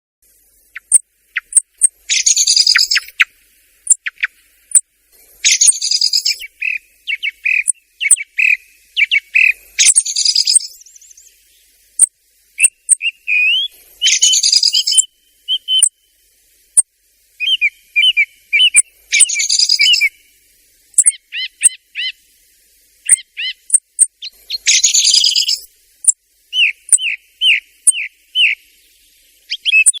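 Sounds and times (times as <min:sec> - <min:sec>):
harsh bird chattering: 0:00.8 - 0:03.2, 0:21.0 - 0:22.1, 0:23.1 - 0:28.0
sharp high bird ticks: 0:00.8 - 0:03.2, 0:03.9 - 0:04.8, 0:21.0 - 0:21.8, 0:23.1 - 0:26.2.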